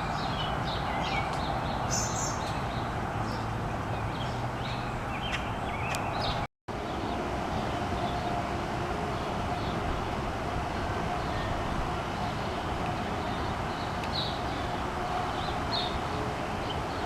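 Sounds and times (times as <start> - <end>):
small birds chirping: 0.0 - 7.2, 12.2 - 17.0
distant traffic hum: 0.0 - 17.0.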